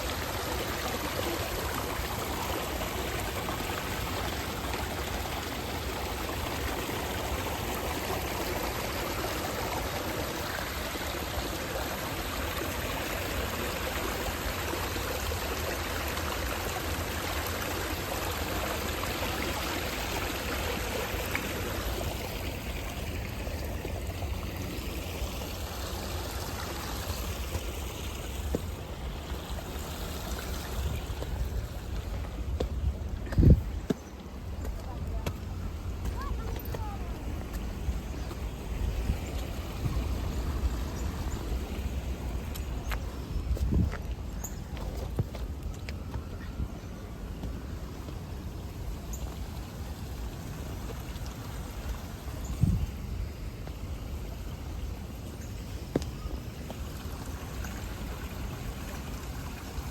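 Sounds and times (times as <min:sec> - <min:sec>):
stream water rushing: 0:00.0 - 0:59.9.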